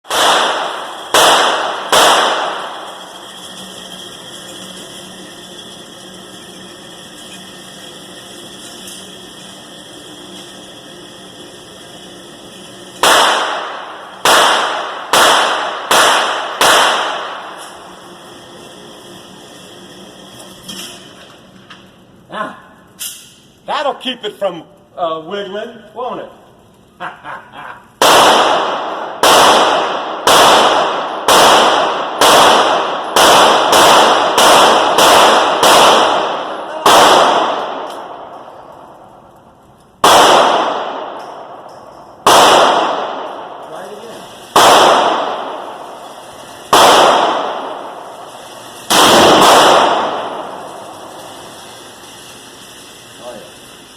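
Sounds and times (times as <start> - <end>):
pistol gunshots echoing: 0.1 - 3.0, 13.0 - 17.7, 28.0 - 38.4, 40.0 - 43.6, 44.5 - 51.2.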